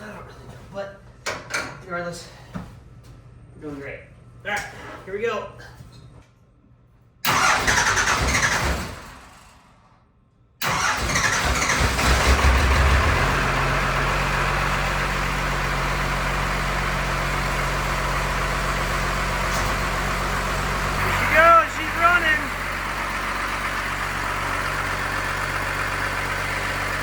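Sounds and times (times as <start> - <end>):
diesel engine cranking: 7.2 - 9.9, 10.6 - 27.0
diesel engine idling: 10.6 - 27.0.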